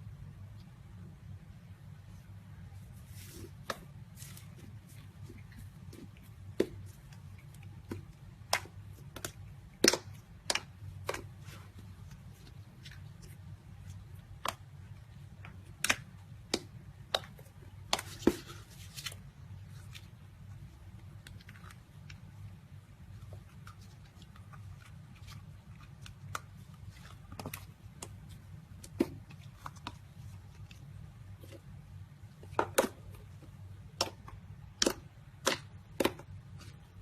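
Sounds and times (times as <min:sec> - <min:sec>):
steady low hum: 0:00.0 - 0:37.0
slime clicking and popping: 0:08.4 - 0:11.3.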